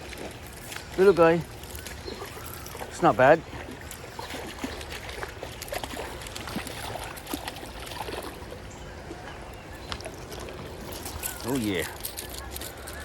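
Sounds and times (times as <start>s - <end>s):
small clicks and splashes: 0.0s - 8.5s, 9.8s - 13.0s
creek water running: 0.0s - 13.0s.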